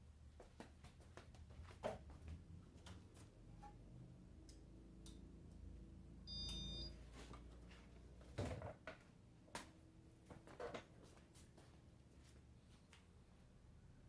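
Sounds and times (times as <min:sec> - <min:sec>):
faint low fan motor hum: 0:00.0 - 0:14.0
short high electronic beep: 0:06.3 - 0:06.9.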